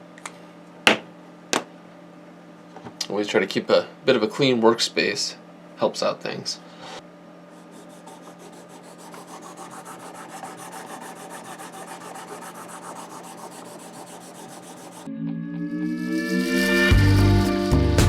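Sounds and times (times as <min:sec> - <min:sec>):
music: 0:15.1 - 0:18.0.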